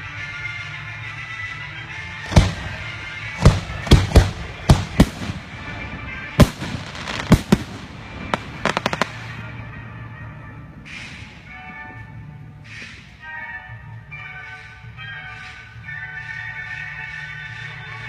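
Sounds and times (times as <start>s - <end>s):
fireworks banging: 2.2s - 9.6s
fireworks popping: 2.3s - 9.4s.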